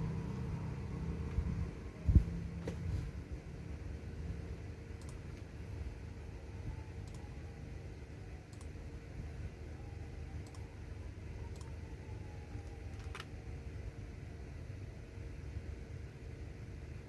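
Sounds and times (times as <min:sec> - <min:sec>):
steady low hum: 0:00.0 - 0:17.0
keyboard keystrokes clicking: 0:12.6 - 0:13.3.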